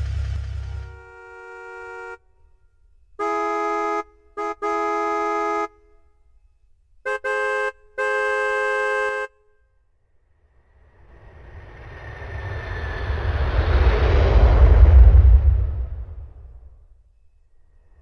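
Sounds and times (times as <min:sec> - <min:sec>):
keyboard car horn honks: 0:00.8 - 0:02.6, 0:03.2 - 0:06.3, 0:07.0 - 0:09.8.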